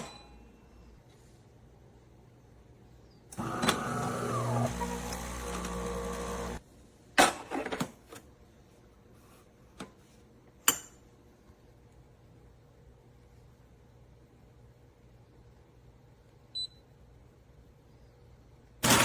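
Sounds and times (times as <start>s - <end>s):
espresso machine motor running: 3.4s - 6.6s.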